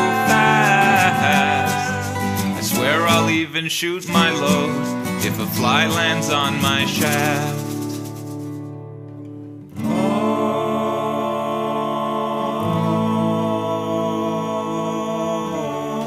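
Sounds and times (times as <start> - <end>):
long held guitar chord: 0.0 - 2.6
acoustic guitar: 0.0 - 16.0.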